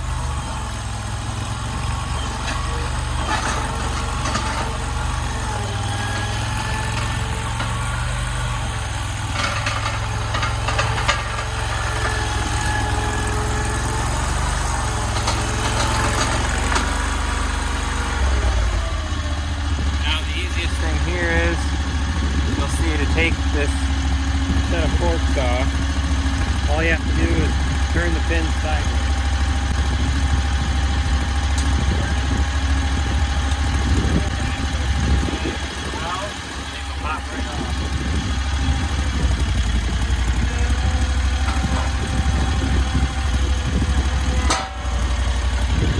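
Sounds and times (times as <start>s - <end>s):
small engine running: 0.0s - 45.9s
sharp metal clanks: 44.4s - 45.1s.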